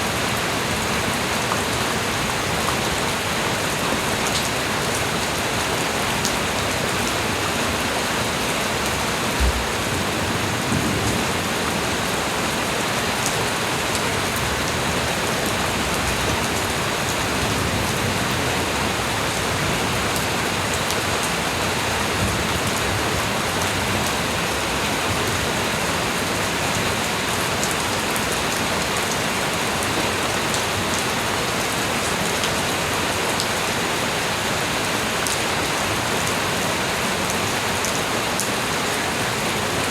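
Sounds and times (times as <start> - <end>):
light rain falling: 0.0 - 39.9
low thump: 9.4 - 9.9.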